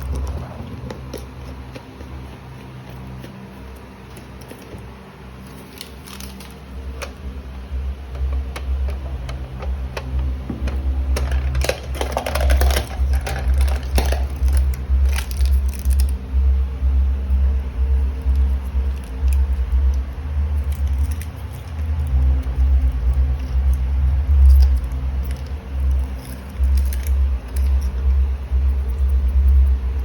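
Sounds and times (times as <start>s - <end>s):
packaging crinkling: 0.0s - 7.2s, 11.1s - 16.2s, 20.6s - 29.7s.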